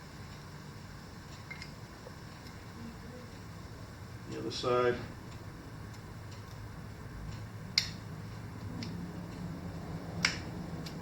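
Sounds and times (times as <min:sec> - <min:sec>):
faint low hum: 0:00.0 - 0:11.0
sharp metallic clicks: 0:07.3 - 0:09.6.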